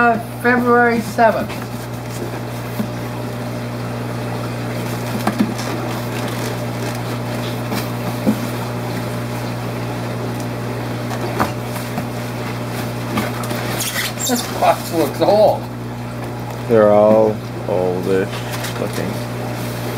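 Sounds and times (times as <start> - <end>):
equipment hum and hiss: 0.0 - 19.9.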